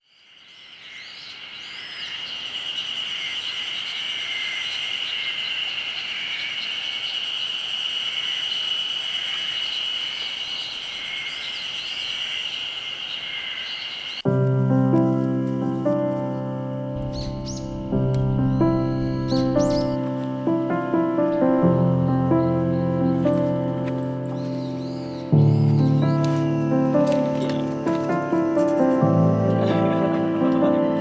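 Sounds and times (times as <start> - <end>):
birds chirping: 0.0 - 31.0
insects droning: 0.0 - 31.0
music: 14.3 - 31.0.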